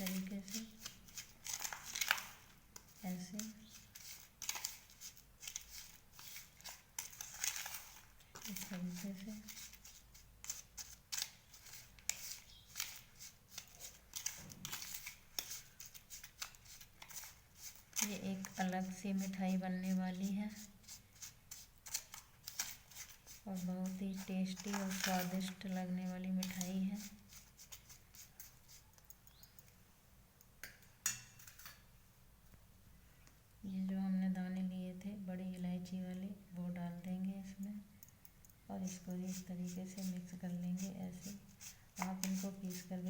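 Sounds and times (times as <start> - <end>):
spoon scraping in bowl: 0.0 - 29.2, 38.8 - 43.0
kitchen utensils and bowl handling: 31.0 - 31.9.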